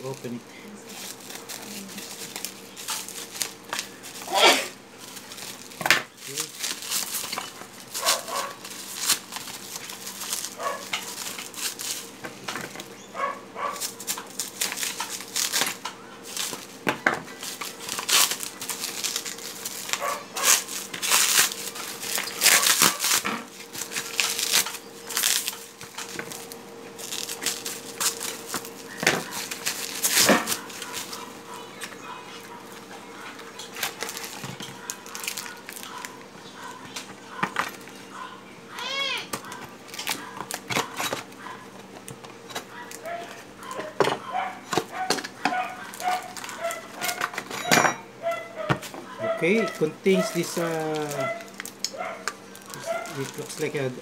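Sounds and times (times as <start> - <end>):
packaging crinkling: 0.0 - 38.3, 39.3 - 47.6, 49.2 - 54.0
scissors cutting packaging: 0.0 - 38.3, 39.3 - 48.4, 49.2 - 54.0.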